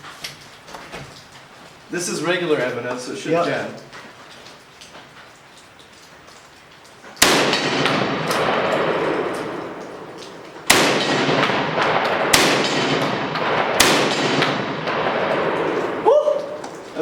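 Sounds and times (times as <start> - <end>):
shotgun shots with echo: 7.2 - 16.1.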